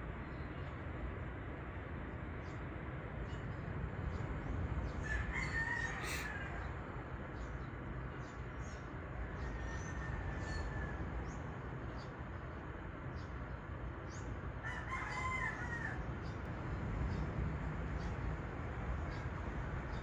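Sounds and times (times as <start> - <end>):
rooster crowing: 5.0 - 6.7, 14.6 - 16.1.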